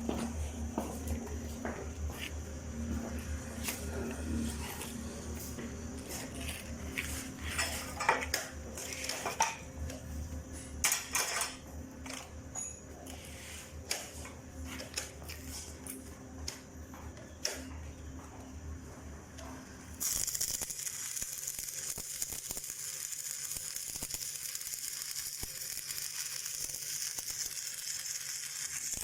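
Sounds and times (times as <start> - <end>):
low mains hum: 0.0 - 29.0
welding arc crackling: 20.0 - 29.0.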